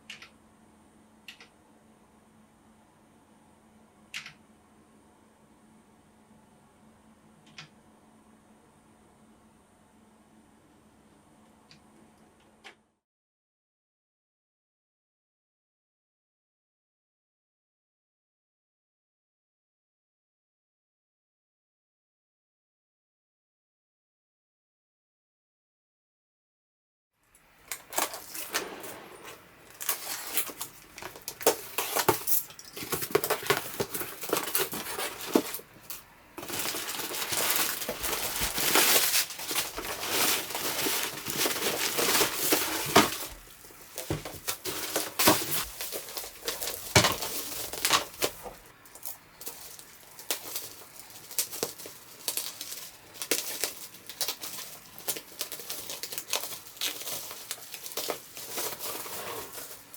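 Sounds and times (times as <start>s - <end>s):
packing material crinkling: 27.6s - 59.9s.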